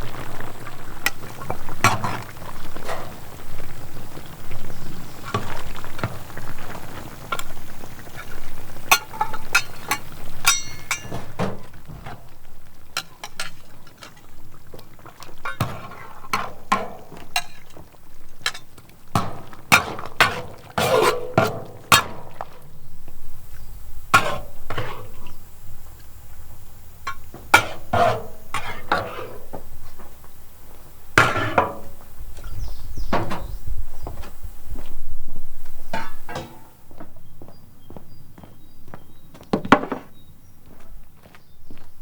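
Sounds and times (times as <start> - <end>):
stirring and scraping: 0.0 - 34.1, 35.6 - 36.8
utensils clinking against pots: 8.2 - 12.1, 13.0 - 14.3, 15.4 - 22.4, 24.1 - 25.4, 27.0 - 30.0, 35.9 - 36.8.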